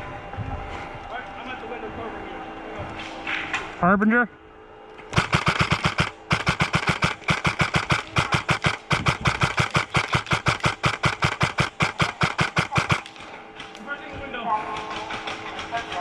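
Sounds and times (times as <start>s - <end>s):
airsoft gun rapid firing: 5.1s - 13.8s, 14.6s - 16.0s.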